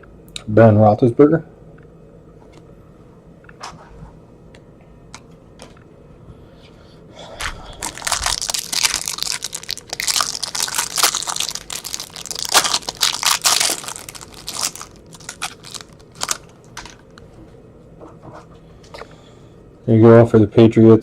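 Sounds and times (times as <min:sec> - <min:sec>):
plastic packaging crinkling: 0:07.4 - 0:17.2.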